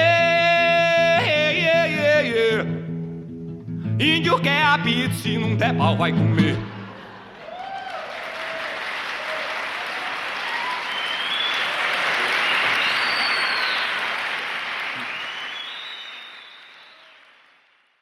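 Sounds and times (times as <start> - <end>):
audience applauding: 6.8 - 18.0.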